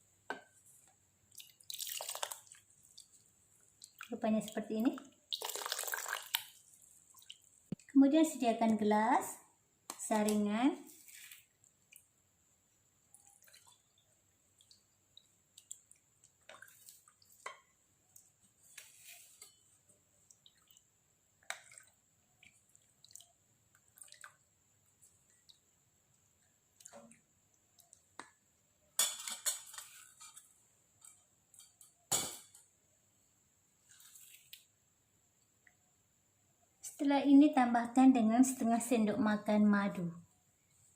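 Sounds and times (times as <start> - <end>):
water dripping through a strainer: 1.3 - 8.8, 13.0 - 19.6, 20.2 - 28.4
kitchenware clinking and knocking: 29.0 - 30.4, 31.6 - 32.7.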